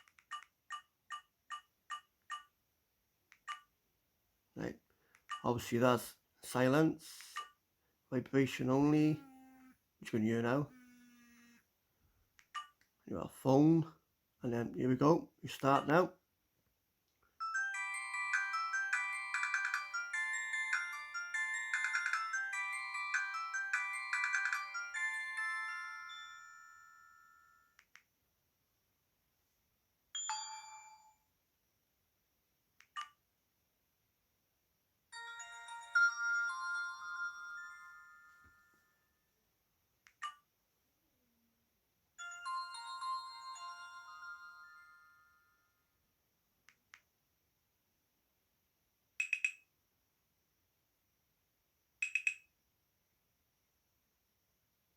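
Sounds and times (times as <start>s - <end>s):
polyphonic phone ringtone: 17.4s - 27.7s, 35.2s - 38.8s.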